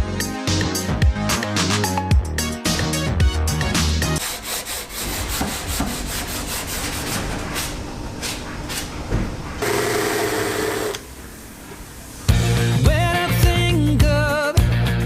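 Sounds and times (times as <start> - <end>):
hand sanding strokes on metal: 4.2 - 8.5
steady machine tone: 7.8 - 12.3.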